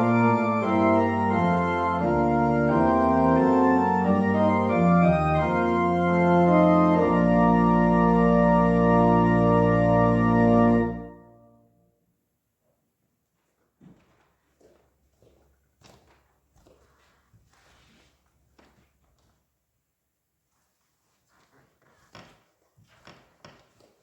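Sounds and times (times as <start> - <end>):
organ chords: 0.0 - 11.7.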